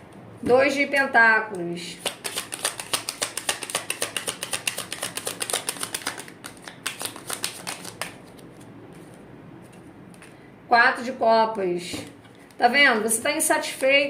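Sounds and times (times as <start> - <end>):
cards shuffling: 2.0 - 10.4.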